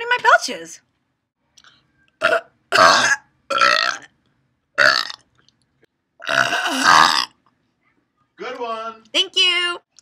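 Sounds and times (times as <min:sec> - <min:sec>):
woman belching: 0:02.2 - 0:04.1, 0:04.8 - 0:05.2, 0:06.2 - 0:07.4.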